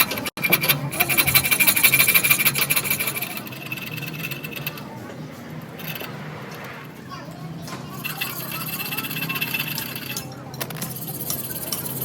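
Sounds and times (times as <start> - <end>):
bike rasping ticking rattle: 0.0 - 5.0.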